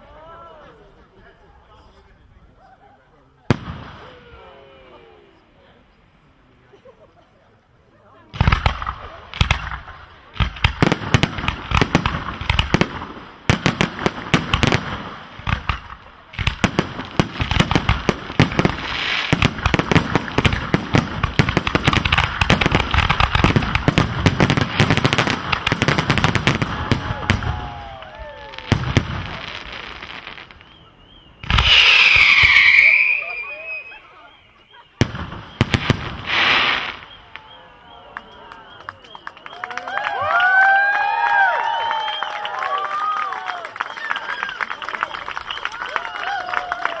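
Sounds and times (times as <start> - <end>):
firework bangs and crackle: 3.5 - 4.6, 8.3 - 34.0, 34.9 - 37.7.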